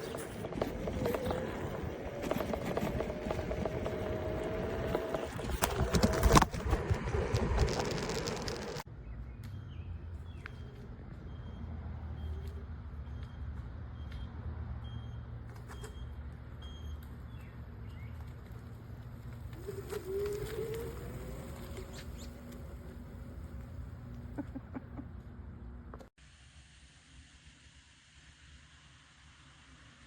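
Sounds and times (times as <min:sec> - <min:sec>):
wind and road noise: 0:00.0 - 0:26.1
electric motor whine: 0:19.5 - 0:24.2.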